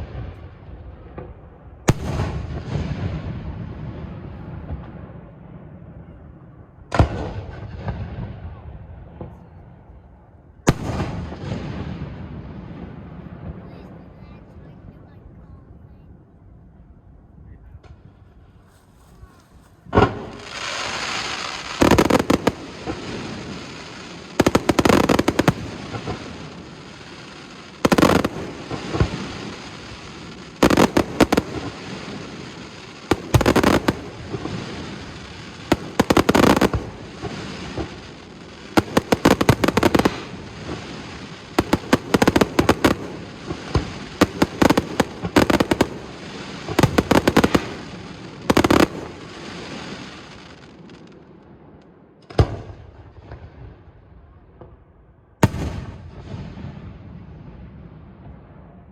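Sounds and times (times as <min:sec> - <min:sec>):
fireworks bursting with bangs and crackles: 0:00.0 - 0:58.9.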